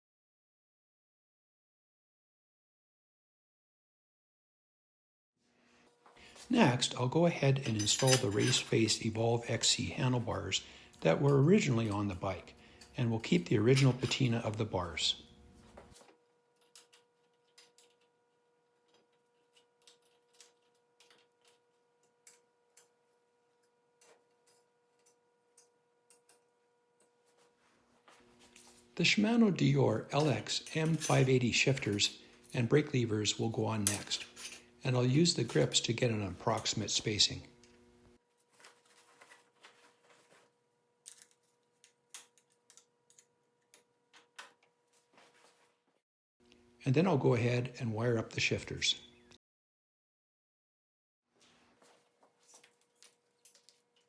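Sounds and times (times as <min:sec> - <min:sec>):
faint steady hum: 0:05.6 - 0:45.8.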